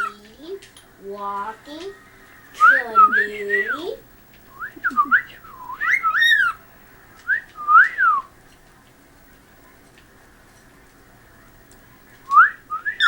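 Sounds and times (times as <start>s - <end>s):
cockatiel whistling: 4.5s - 6.6s, 7.3s - 8.3s, 12.3s - 13.0s.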